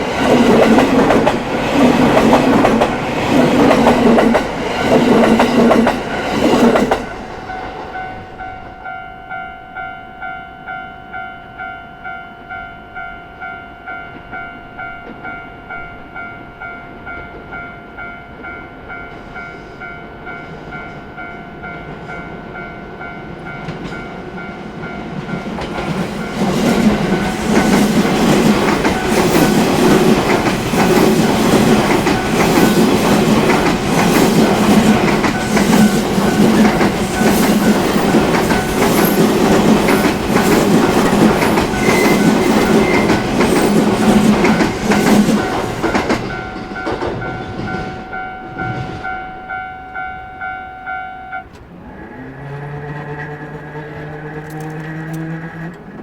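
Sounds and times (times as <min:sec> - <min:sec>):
level crossing warning bell: 0:05.3 - 0:51.6
train wheels clattering over rail joints: 0:25.2 - 0:49.2.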